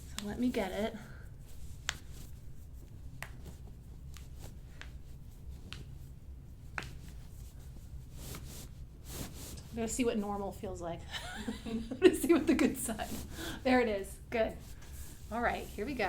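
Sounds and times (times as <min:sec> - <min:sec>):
low room hum: 0:00.0 - 0:16.0.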